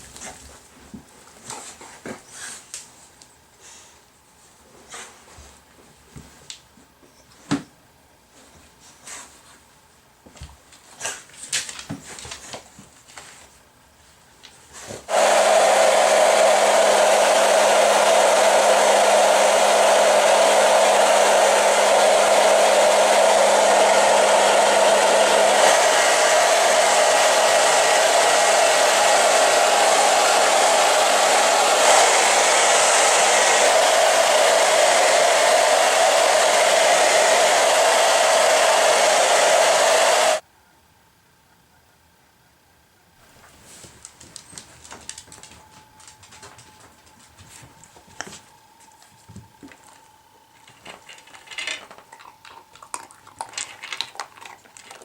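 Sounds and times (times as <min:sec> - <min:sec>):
blow dryer running: 0:15.1 - 0:40.4.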